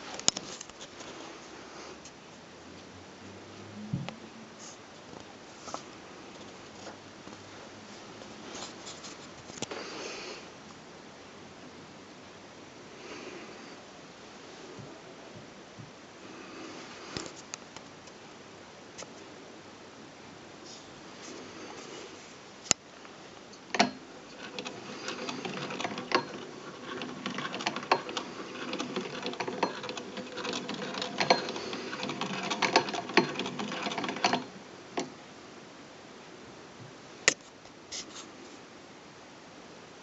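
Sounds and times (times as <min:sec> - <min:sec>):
hand-crank sewing machine clattering: 0:23.7 - 0:35.1.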